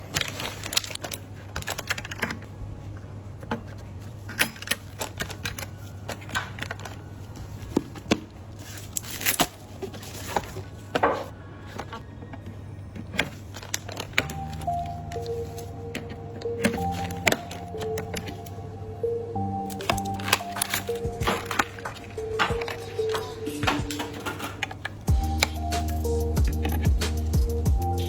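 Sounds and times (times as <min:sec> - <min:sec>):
computer hardware clicks and taps: 0:19.5 - 0:28.0.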